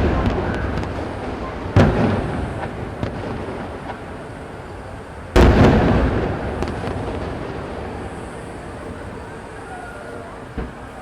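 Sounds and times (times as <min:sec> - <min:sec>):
faint firework pops: 0:00.0 - 0:04.1, 0:10.5 - 0:11.0
big firework boom with echo: 0:00.0 - 0:11.0
firework shells bursting: 0:00.0 - 0:11.0.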